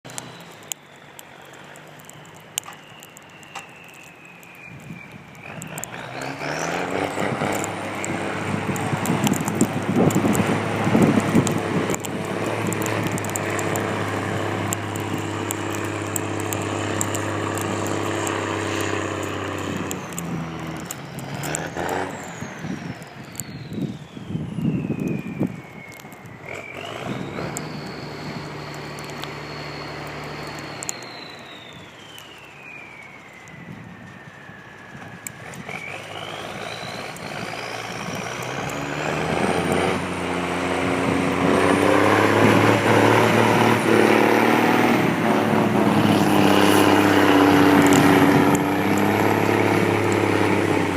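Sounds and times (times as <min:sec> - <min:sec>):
truck diesel engine running: 0:05.6 - 0:22.4.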